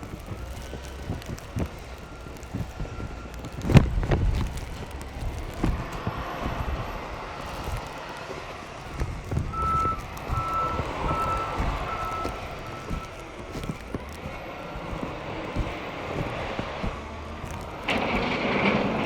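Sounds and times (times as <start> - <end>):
street traffic rumble: 0.0 - 19.0
reversing alarm beeping: 9.5 - 13.1.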